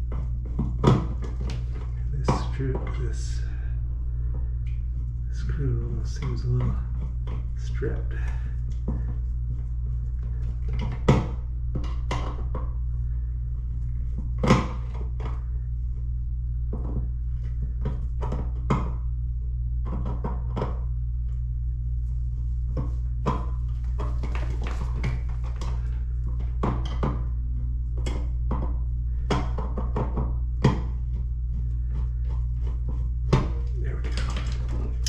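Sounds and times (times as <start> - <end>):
steady low hum: 0.0 - 35.0
hardware clicks and knocks: 32.6 - 35.0.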